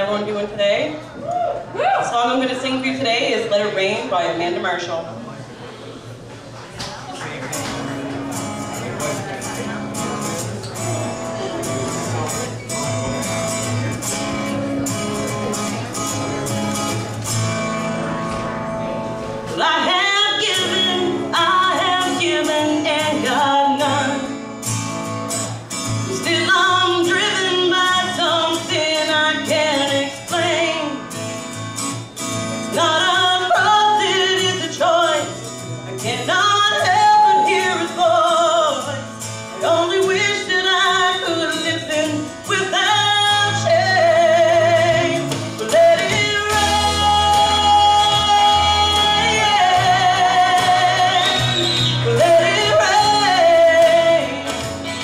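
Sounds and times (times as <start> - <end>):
instrumental accompaniment with guitar: 6.9 - 55.0
woman singing: 19.6 - 24.4, 26.1 - 31.1, 32.7 - 35.4, 36.0 - 39.0, 39.6 - 55.0.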